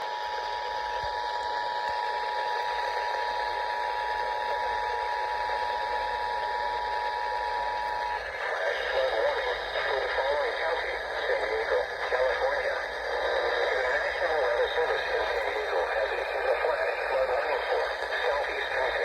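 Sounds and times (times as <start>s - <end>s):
radio hiss: 7.6s - 19.0s
voice announcement: 8.1s - 19.0s.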